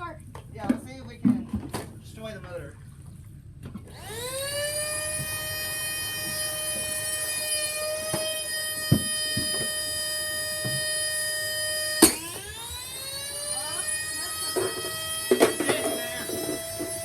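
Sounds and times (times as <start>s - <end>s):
vacuum motor whining: 3.9s - 17.0s.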